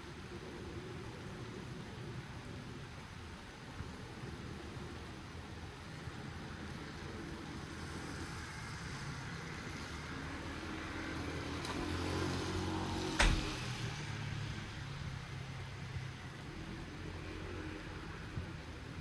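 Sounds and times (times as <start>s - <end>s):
light rain falling: 0.0s - 19.0s
sharp knock: 13.2s - 13.8s.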